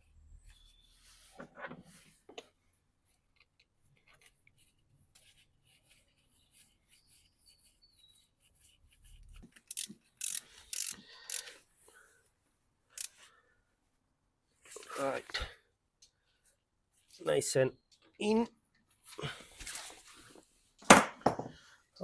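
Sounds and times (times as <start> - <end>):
faint rubbing of parts: 0.0 - 14.0.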